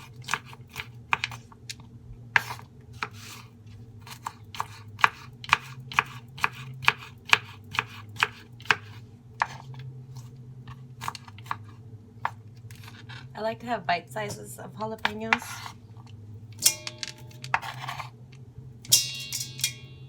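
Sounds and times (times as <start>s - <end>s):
knife chopping vegetables: 0.0s - 1.4s, 2.4s - 13.2s, 15.0s - 15.8s.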